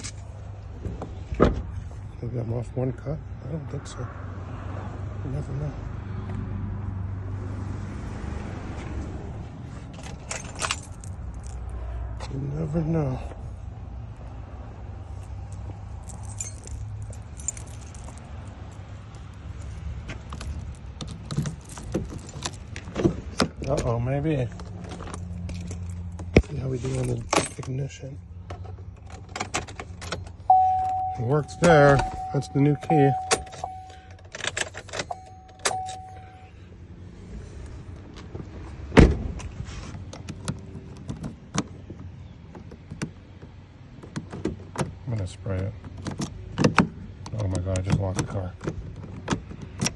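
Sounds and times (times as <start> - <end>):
metal keys jangling: 10.0 - 11.6, 16.0 - 18.8, 29.0 - 36.4
low steady hum: 30.5 - 36.5
loud thump: 39.0 - 39.4.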